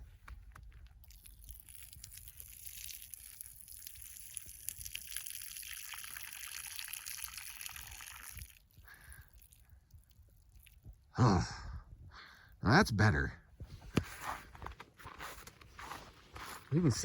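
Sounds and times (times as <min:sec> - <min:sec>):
urine stream hitting ground: 0:00.0 - 0:10.9.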